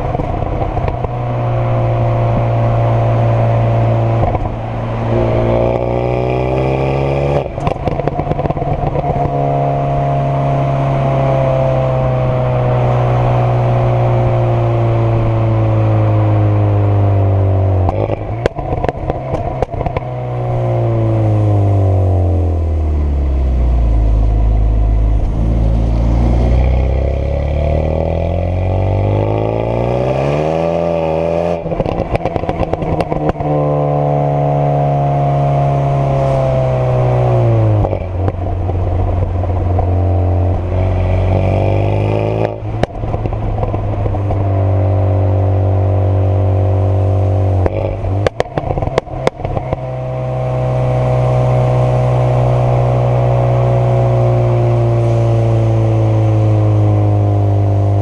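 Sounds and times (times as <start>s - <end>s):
exhaust pops and crackles: 0.0s - 1.4s, 4.1s - 4.6s, 7.3s - 9.5s, 17.8s - 20.5s, 31.6s - 33.6s, 37.0s - 44.8s, 47.6s - 50.2s
car engine revving: 0.0s - 58.0s.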